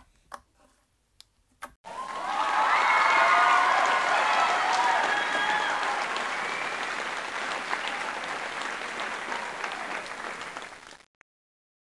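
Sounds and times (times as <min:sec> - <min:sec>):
crowd applause: 0:01.9 - 0:11.1.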